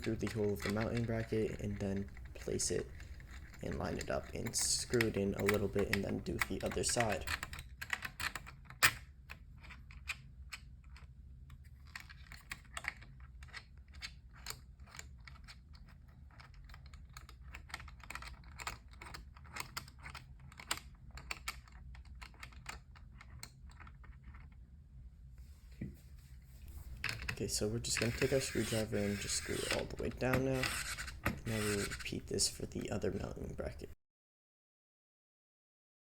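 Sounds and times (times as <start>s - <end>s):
screws clicking into metal brackets: 0.0s - 7.6s, 26.9s - 33.8s.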